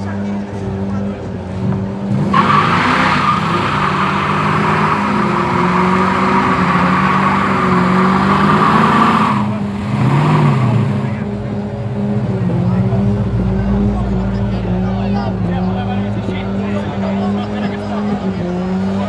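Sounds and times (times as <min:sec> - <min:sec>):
car engine revving: 0:00.0 - 0:19.0
tyres squealing: 0:02.3 - 0:11.0.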